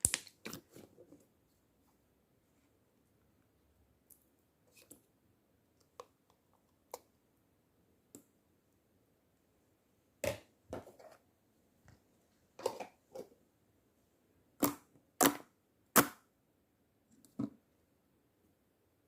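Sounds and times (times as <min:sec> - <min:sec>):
slime popping and snapping: 0:00.0 - 0:00.5.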